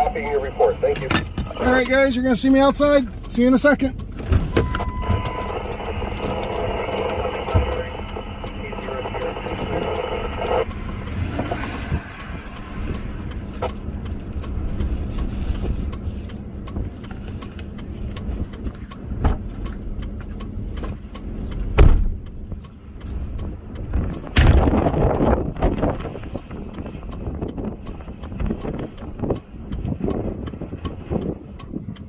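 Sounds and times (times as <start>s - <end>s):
wind noise on microphone: 9.0s - 16.0s, 21.7s - 32.0s.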